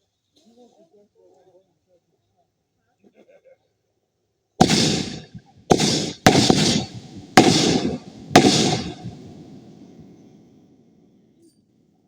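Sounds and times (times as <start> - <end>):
fireworks banging: 4.6 - 10.4.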